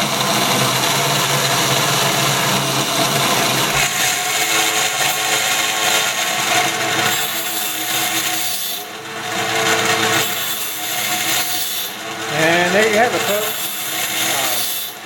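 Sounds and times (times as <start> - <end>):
grinding wheel on saw blade: 0.0 - 15.0.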